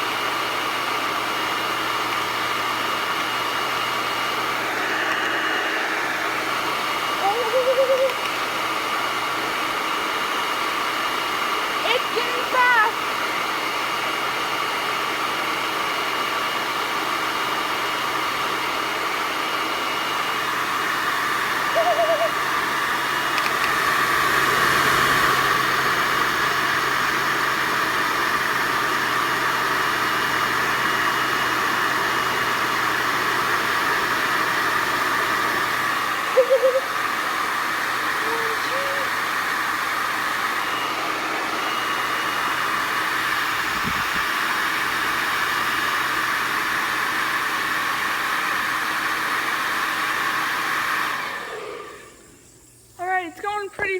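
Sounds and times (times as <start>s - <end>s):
hair dryer blowing: 0.0s - 52.5s
short pitched sounds: 7.1s - 8.4s, 21.7s - 22.4s, 36.2s - 37.0s, 38.1s - 39.2s.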